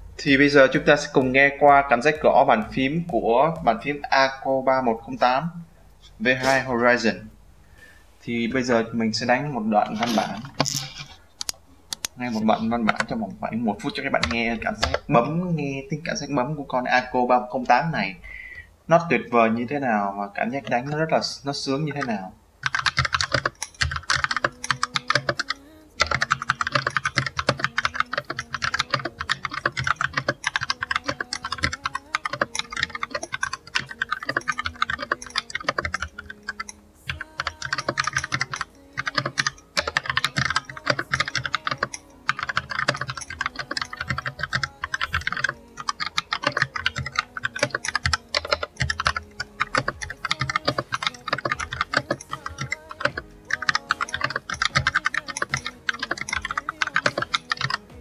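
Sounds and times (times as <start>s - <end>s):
mechanical keyboard typing: 9.2s - 17.3s, 20.4s - 58.0s.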